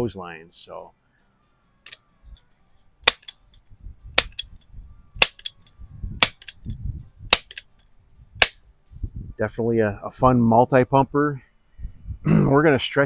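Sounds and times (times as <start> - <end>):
low air rush: 11.8 - 12.4.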